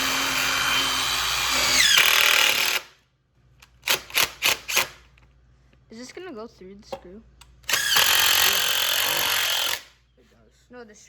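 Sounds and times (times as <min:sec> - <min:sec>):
power drill driving screws: 0:00.0 - 0:02.9, 0:03.8 - 0:05.0, 0:07.7 - 0:09.9.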